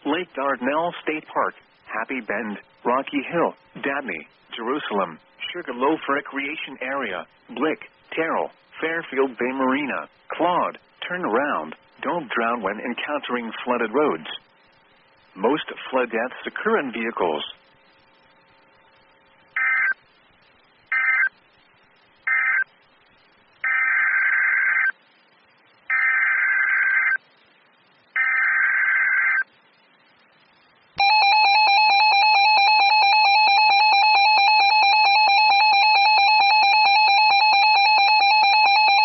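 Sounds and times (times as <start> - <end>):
buzzing data bursts: 19.5 - 20.2, 20.9 - 21.4.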